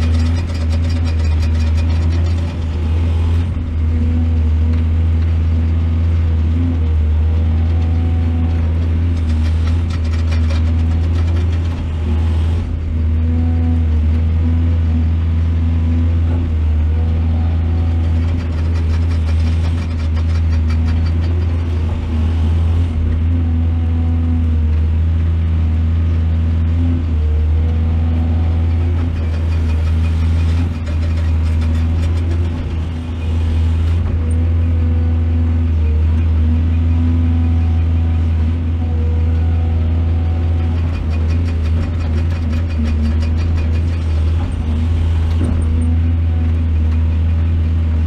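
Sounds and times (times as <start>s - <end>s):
rattling clatter: 0.0s - 3.8s, 8.3s - 12.8s, 17.8s - 23.3s, 28.5s - 34.7s, 40.5s - 47.8s
excavator diesel engine running: 0.0s - 48.0s.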